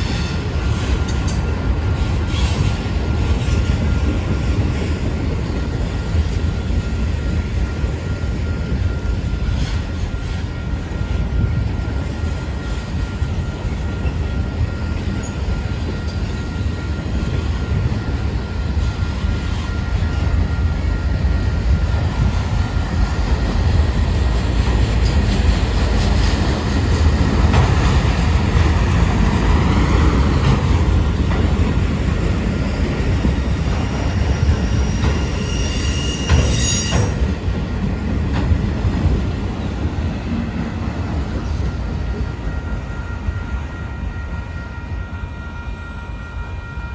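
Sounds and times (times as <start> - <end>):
steel wheels rumbling on rail: 0.0 - 46.9
high wheel screech: 33.6 - 37.3
faint wheel squeal: 33.6 - 37.4.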